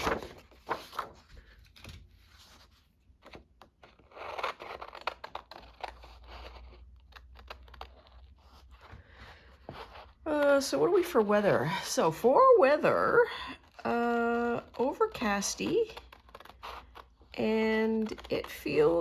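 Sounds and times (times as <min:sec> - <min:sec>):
paper rustling: 0:00.0 - 0:10.2, 0:14.5 - 0:19.0
paper tapping and clicking: 0:17.8 - 0:18.8.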